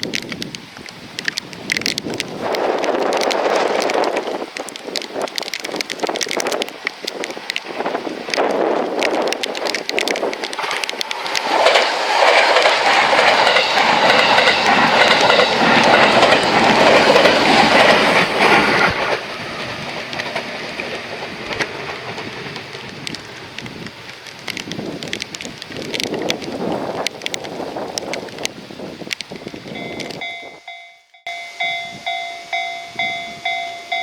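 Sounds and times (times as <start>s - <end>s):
train wheels clattering: 1.7s - 28.5s.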